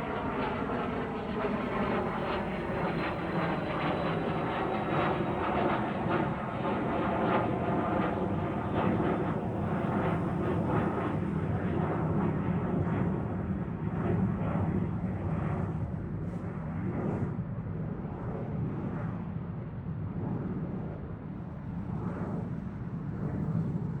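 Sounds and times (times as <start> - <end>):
jet engine rumble: 0.0 - 13.4.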